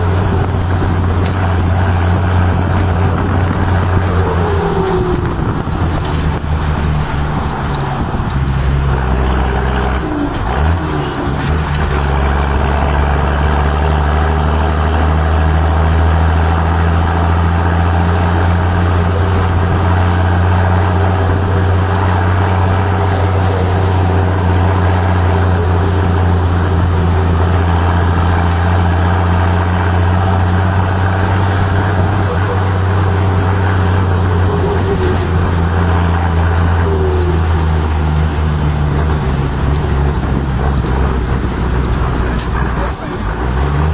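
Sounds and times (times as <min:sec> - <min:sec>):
engine droning steadily: 0:00.0 - 0:43.9.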